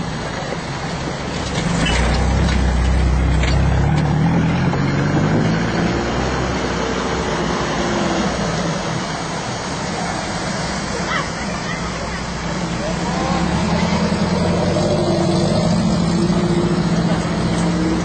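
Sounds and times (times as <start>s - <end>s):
vehicle engine low rumble: 0.0s - 10.8s, 11.8s - 18.0s.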